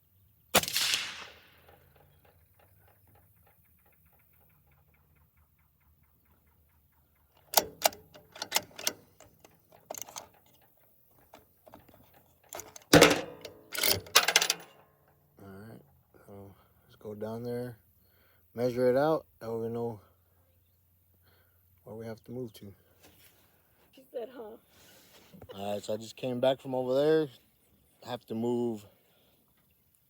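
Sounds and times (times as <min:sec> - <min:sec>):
suppressed rifle shot: 0:00.5 - 0:02.0
clicks and knocks of rifle action: 0:07.3 - 0:14.8.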